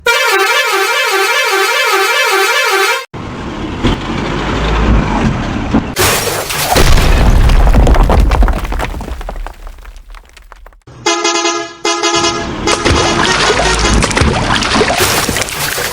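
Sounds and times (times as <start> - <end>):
low rumble with clatter: 3.4 - 6.0.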